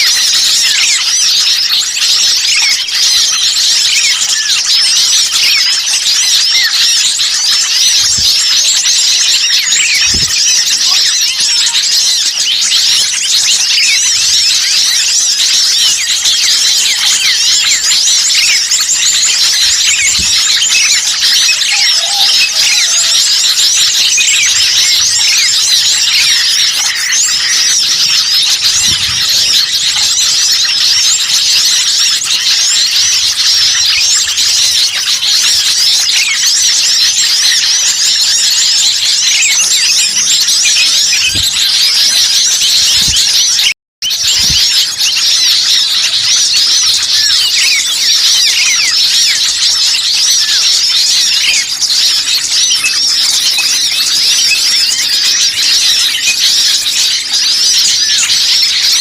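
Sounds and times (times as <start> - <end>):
small birds chirping: 0.0 - 59.0.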